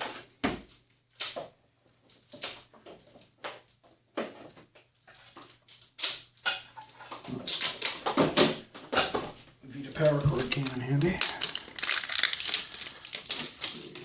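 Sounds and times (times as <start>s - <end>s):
packaging being scraped and torn: 10.0s - 14.0s.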